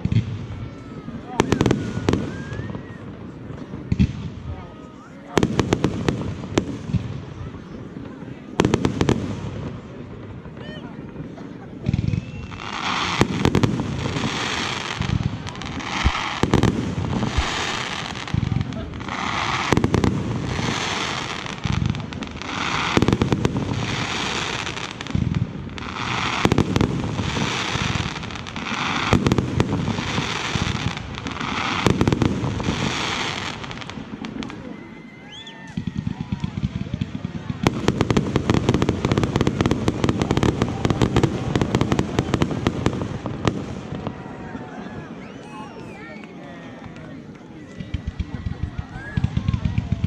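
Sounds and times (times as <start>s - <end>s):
rising fireworks whistles: 0.0s - 9.8s, 10.5s - 50.0s
fireworks bangs: 0.0s - 50.0s
fireworks hiss: 11.9s - 34.5s.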